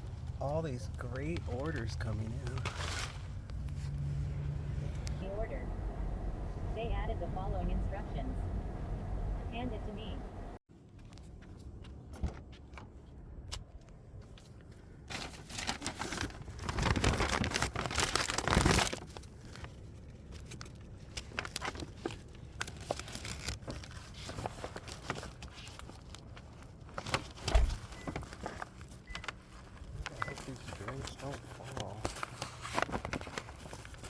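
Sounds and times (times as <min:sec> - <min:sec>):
paper bag rustling and crinkling: 0:00.0 - 0:04.2, 0:15.1 - 0:34.0.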